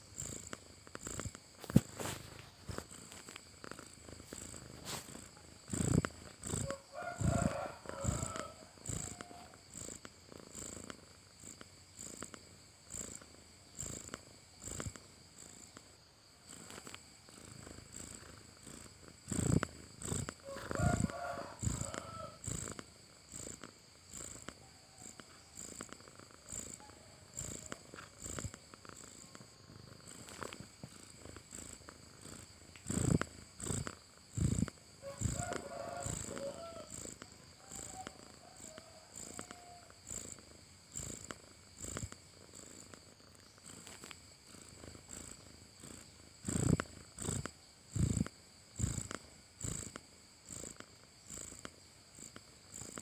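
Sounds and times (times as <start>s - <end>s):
cat snoring: 0.0s - 53.0s.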